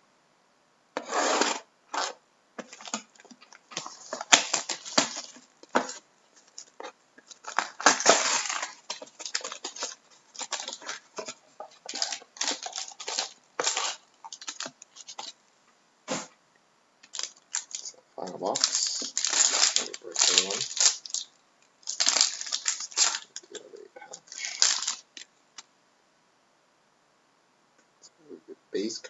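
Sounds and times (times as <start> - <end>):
plastic wrap tearing and crinkling: 1.3 - 15.4, 17.0 - 25.3.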